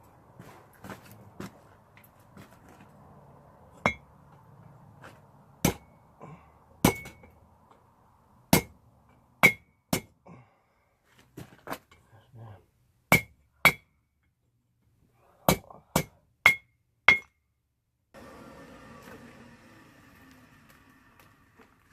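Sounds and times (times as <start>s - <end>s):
hammer striking metal on anvil: 9.4s - 10.1s, 16.0s - 17.4s.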